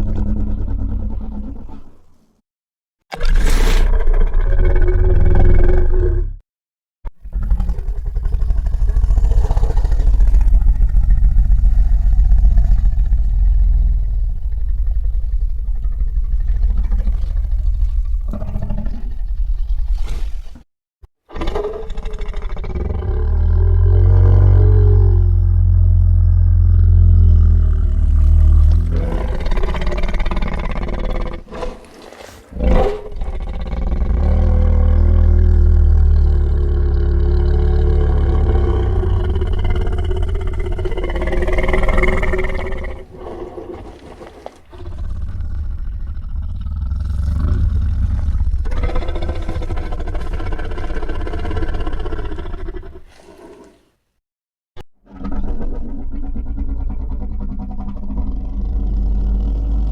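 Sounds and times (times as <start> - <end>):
loud low fluttering rumble: 7.8 - 18.3
monster roaring: 21.4 - 31.7, 32.5 - 43.0.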